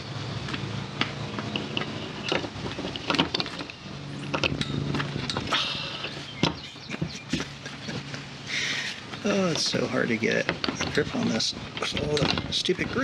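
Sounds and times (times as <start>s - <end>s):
steady low hum: 0.0s - 13.0s
small plastic clicks and knocks: 11.8s - 12.6s.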